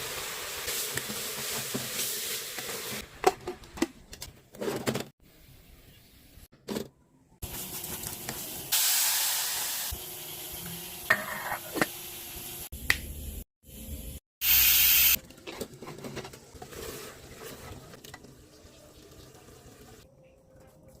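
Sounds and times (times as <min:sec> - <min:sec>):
food sizzling in a pan: 0:00.0 - 0:03.0, 0:07.4 - 0:12.7, 0:13.9 - 0:15.2.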